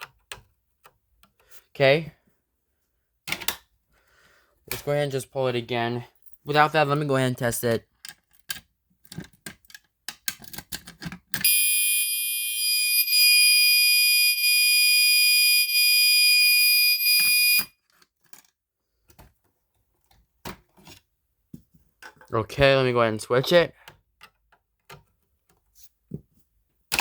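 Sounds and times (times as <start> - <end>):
fire alarm horn tone: 11.4 - 17.7.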